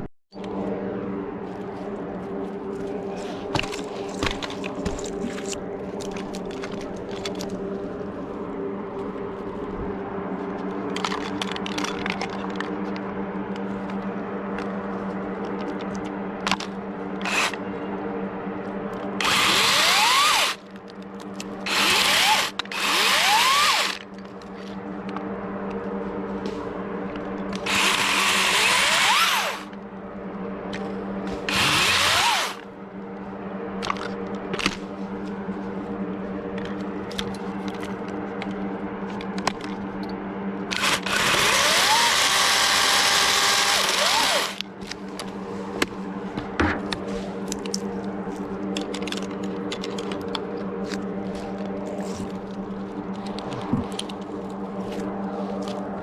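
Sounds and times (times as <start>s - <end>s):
steady low hum: 0.0s - 56.0s
chainsaw motor whine: 15.2s - 24.3s, 26.9s - 29.9s, 30.5s - 34.7s, 40.7s - 45.3s.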